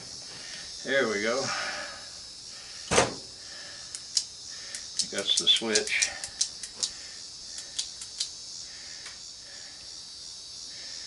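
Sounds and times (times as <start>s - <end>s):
high-pitched hiss: 0.0s - 11.0s
small metal parts clicking: 3.9s - 7.0s, 7.6s - 8.3s.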